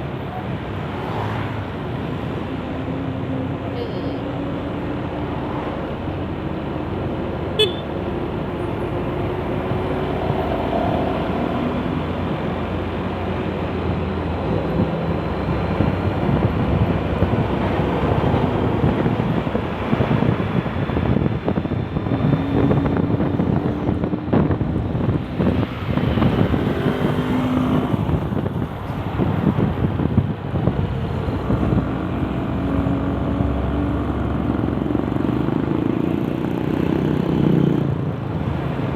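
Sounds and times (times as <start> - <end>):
cars and motorcycles passing: 0.0 - 38.9
wind buffeting microphone: 9.0 - 38.9.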